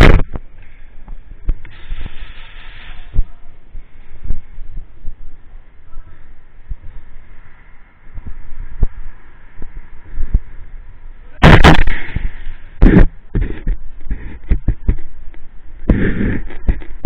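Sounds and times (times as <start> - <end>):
sharp clicks and knocks: 11.5 - 17.0.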